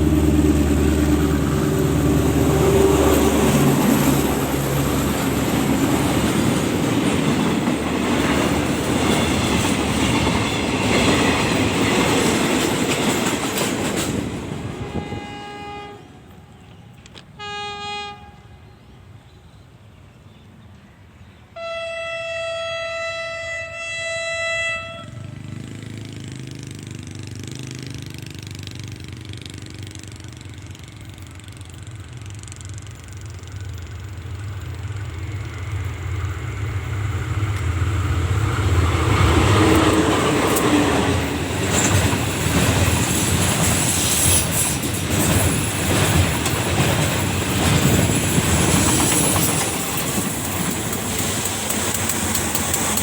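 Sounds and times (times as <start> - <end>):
train wheels clattering on rails: 0.0 - 15.3, 25.9 - 53.0
train engine rumble: 0.0 - 53.0
train horn blast: 14.8 - 19.1, 21.5 - 25.6.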